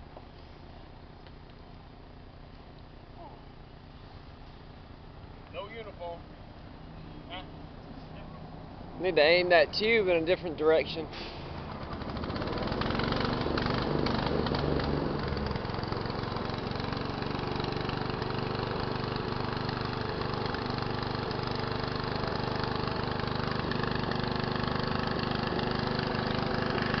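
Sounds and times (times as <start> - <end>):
small engine running grinder: 11.4 - 27.0.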